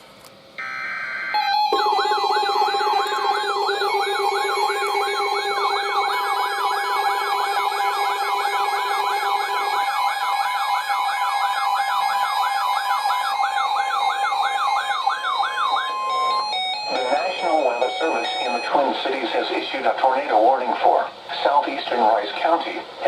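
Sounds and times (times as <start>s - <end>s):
steady alert tones: 0.6s - 11.6s, 13.0s - 19.2s
electronic siren yelping: 0.6s - 18.9s.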